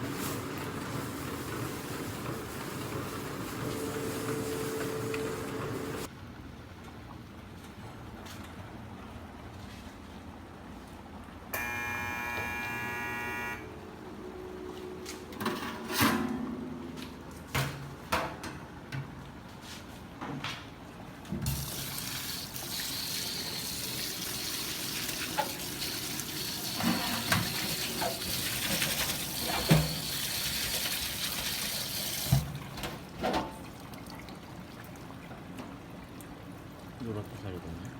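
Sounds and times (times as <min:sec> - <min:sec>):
tap water running: 0:00.0 - 0:06.1, 0:21.4 - 0:37.1
buzzing tone: 0:11.5 - 0:13.8.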